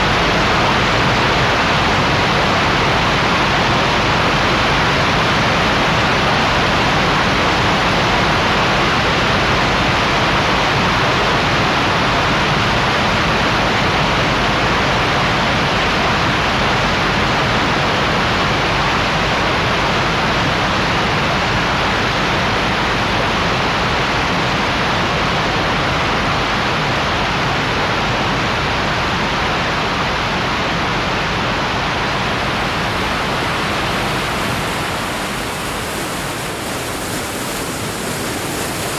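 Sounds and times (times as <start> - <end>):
waterfall roaring: 0.0 - 12.1, 25.7 - 38.9.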